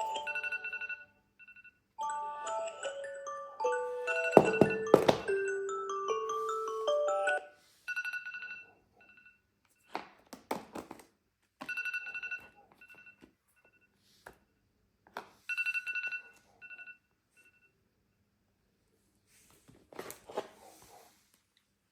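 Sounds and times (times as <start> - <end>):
melodic chime alarm tone: 0.0 - 1.2, 2.0 - 7.5
phone alarm beeping: 3.0 - 9.4.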